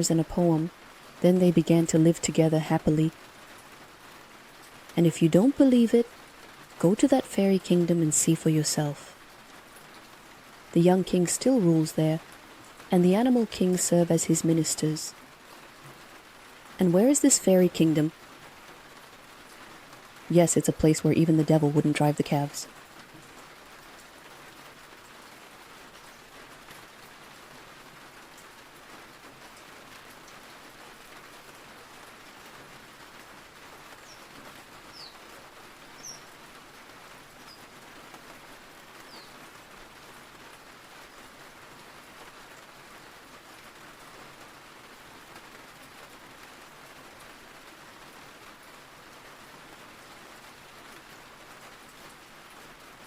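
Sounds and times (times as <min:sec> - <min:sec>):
steady rain falling: 0:00.0 - 0:53.0.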